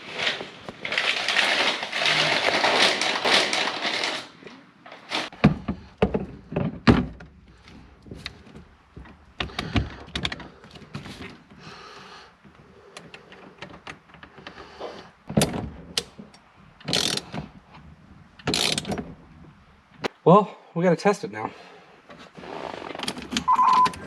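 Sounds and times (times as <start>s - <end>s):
rattling and scraping: 0.0s - 11.6s.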